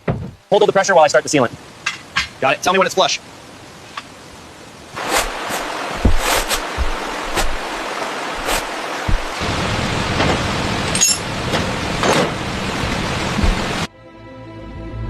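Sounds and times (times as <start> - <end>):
stream water rushing: 1.0 - 13.9
short sharp knocks: 5.5 - 7.8, 8.4 - 9.4, 13.4 - 13.7.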